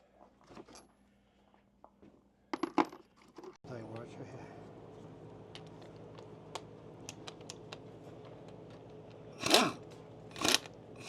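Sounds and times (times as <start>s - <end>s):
pneumatic impact wrench bursts: 9.4s - 10.7s
metallic clicks of tools: 10.4s - 10.7s.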